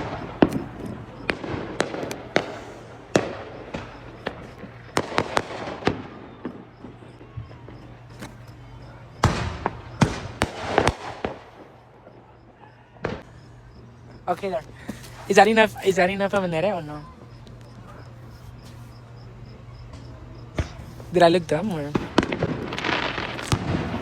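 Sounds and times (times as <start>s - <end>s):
fireworks bangs and pops: 0.0s - 13.4s, 19.8s - 24.0s
fireworks crackling: 0.0s - 24.0s.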